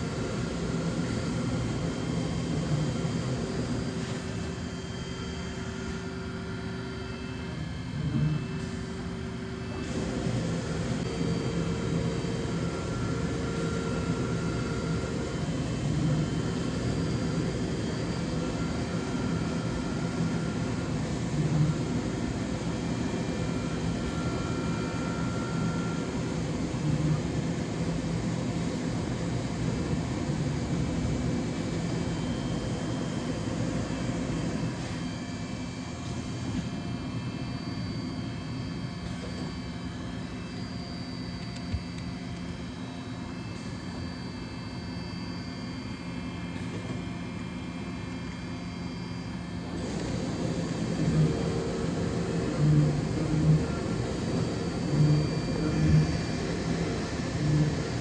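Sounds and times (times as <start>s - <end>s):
milling machine running: 0.0s - 6.6s, 9.0s - 37.5s, 49.2s - 58.0s
high machine tone: 49.6s - 58.0s.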